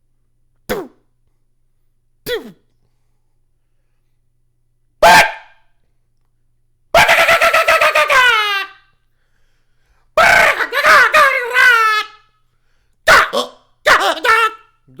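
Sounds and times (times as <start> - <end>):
beatboxer pitched vocal effects: 0.7 - 1.0, 2.3 - 2.6.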